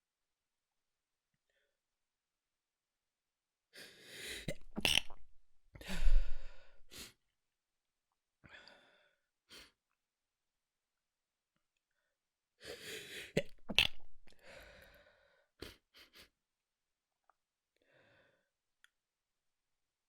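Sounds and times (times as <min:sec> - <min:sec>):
person stifling a sneeze: 0:04.5 - 0:05.1.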